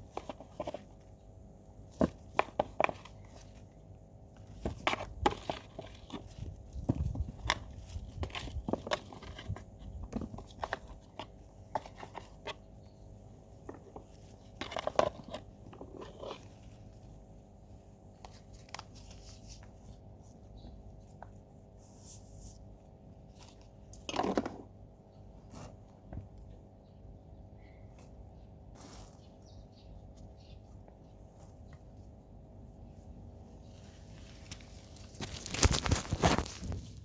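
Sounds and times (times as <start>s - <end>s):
hands crunching and clicking things: 34.2s - 36.9s.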